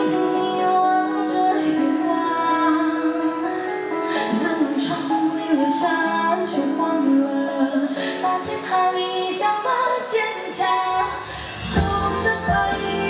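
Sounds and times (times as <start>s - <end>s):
live pop band music: 0.0s - 13.0s.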